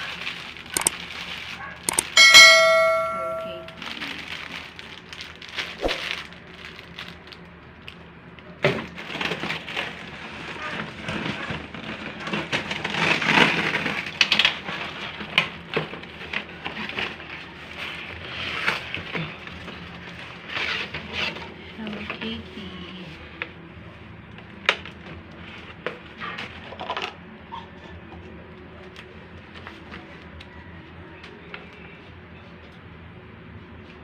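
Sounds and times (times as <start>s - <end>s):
rustling of packaging: 0.0s - 1.8s, 3.7s - 8.0s, 8.8s - 14.6s
bell-like ding: 1.9s - 3.8s.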